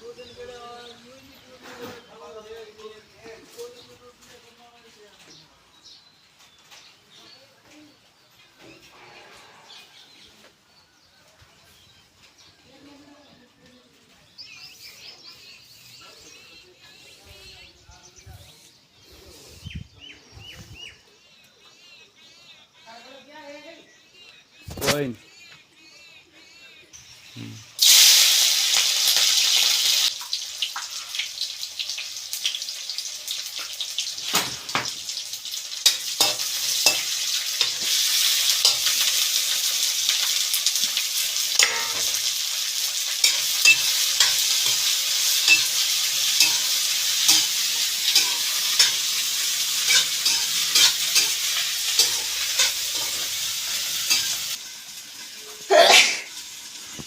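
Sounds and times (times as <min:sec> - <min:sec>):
welding arc crackling hiss: 0:27.7 - 0:57.0.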